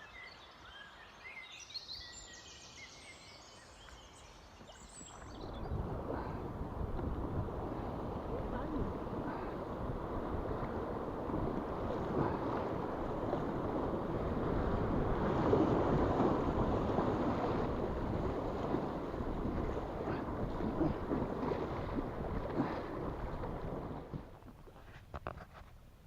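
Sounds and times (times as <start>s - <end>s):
wind buffeting microphone: 5.1s - 24.7s
river water rushing: 5.2s - 24.3s.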